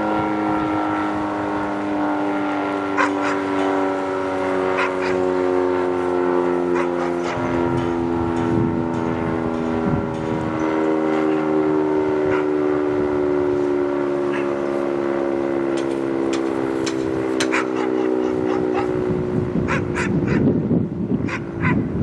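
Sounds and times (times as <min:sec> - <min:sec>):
outdoor warning siren: 0:00.0 - 0:22.0
wind rumbling on microphone: 0:04.8 - 0:14.8, 0:15.4 - 0:22.0.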